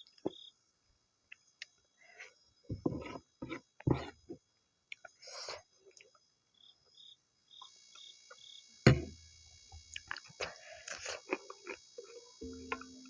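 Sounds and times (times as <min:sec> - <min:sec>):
sharp knock: 0:08.9 - 0:09.2.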